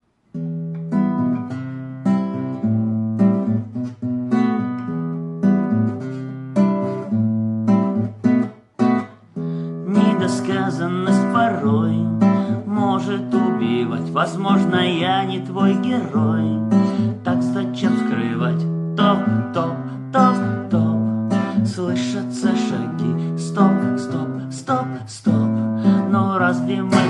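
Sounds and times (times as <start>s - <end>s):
acoustic guitar chords: 0.0s - 27.0s
person singing: 9.6s - 27.0s.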